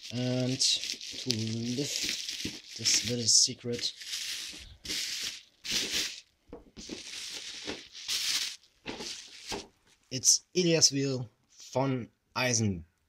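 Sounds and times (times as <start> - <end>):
packaging crinkling and rustling: 0.0 - 10.1.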